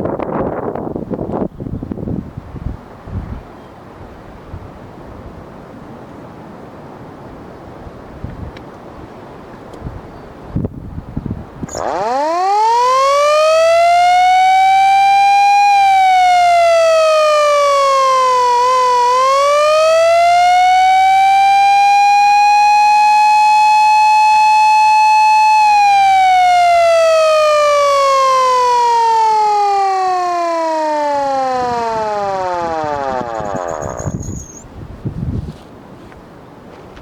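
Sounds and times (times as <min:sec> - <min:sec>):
mechanical siren wailing: 0:11.6 - 0:34.7.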